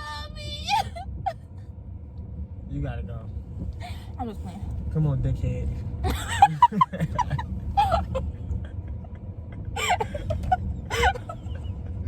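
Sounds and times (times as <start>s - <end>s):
low rumble inside a car: 0.0s - 12.0s.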